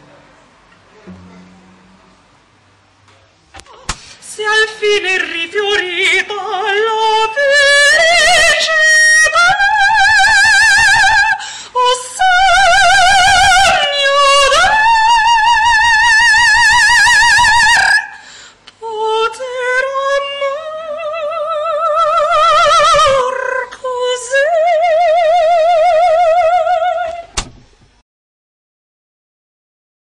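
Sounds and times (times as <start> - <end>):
soprano singing opera: 4.2 - 18.2, 18.8 - 27.3.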